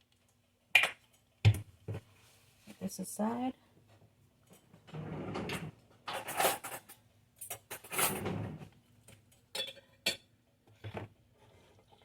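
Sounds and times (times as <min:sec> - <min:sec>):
kitchen items scraping and rustling: 0:04.6 - 0:08.8.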